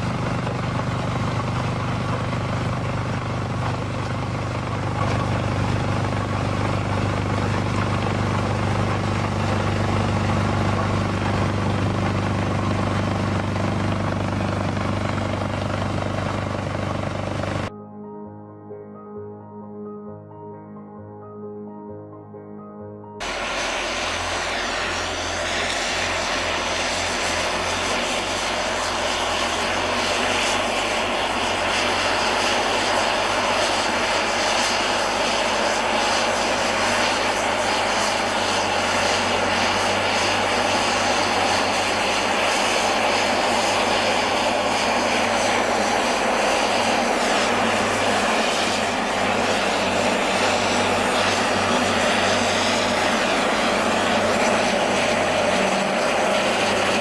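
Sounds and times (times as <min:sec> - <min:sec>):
loud engine drone: 0:00.0 - 0:17.7, 0:23.2 - 0:57.0.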